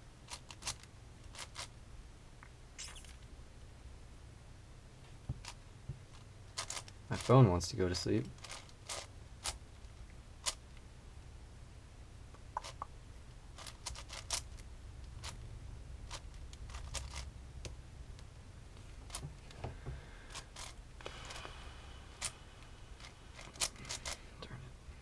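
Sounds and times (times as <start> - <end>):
puzzle cube scraping turns: 0.3 - 1.7, 5.4 - 7.4, 8.2 - 9.6, 13.6 - 15.4, 16.1 - 17.3, 20.2 - 21.6, 22.2 - 24.3
puzzle cube clicking: 12.5 - 12.9, 13.6 - 14.4.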